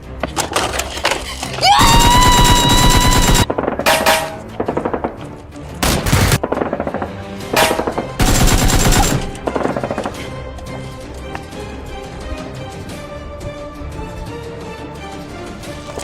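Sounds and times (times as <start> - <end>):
background music: 0.0 - 16.0
machine-gun fire: 1.8 - 4.9, 5.8 - 9.9.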